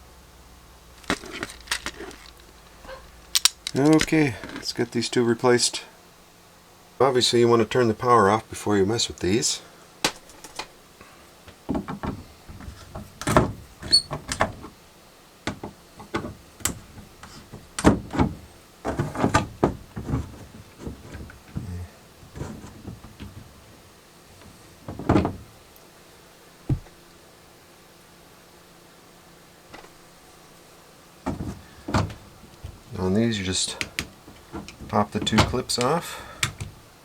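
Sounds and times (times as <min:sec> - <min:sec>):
hands clicking and scraping: 0:01.0 - 0:04.8, 0:33.6 - 0:36.8.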